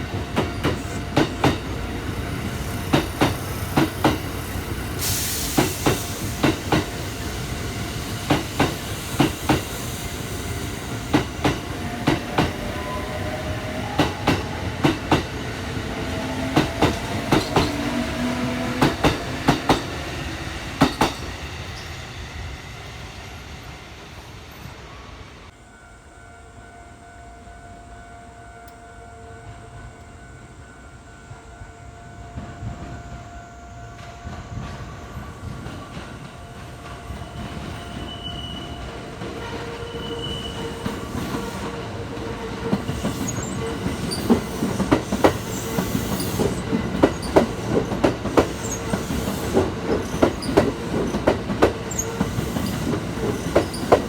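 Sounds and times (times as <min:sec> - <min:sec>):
train rumble: 0:00.0 - 0:25.6, 0:31.2 - 0:54.0
train wheels clicking over rail joints: 0:00.1 - 0:12.7, 0:13.8 - 0:21.8, 0:40.8 - 0:54.0.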